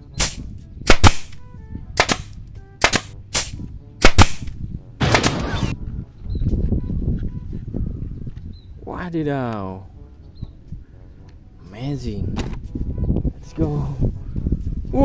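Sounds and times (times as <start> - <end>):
toy pistol bangs: 0.2 - 1.4, 2.0 - 5.6.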